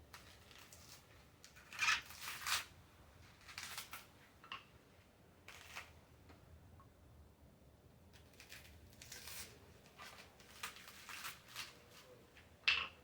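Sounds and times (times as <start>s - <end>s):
coconut husk tearing: 0.1s - 4.1s, 8.1s - 12.2s.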